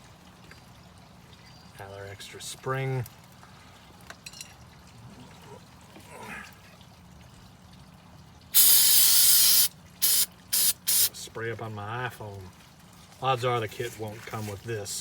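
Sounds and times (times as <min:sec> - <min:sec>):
aerosol spray hissing: 0:08.6 - 0:11.1.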